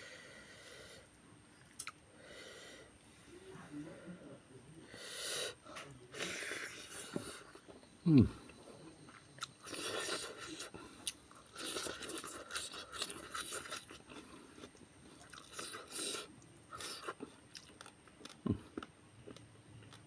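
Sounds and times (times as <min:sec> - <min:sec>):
chewing food: 0:08.4 - 0:20.0.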